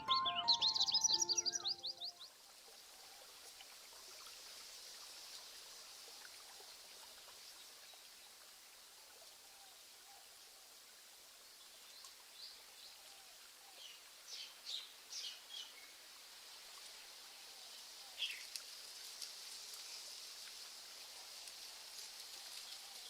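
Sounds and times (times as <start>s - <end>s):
small birds chirping: 0.0s - 2.3s
soft hiss of water: 2.2s - 23.0s.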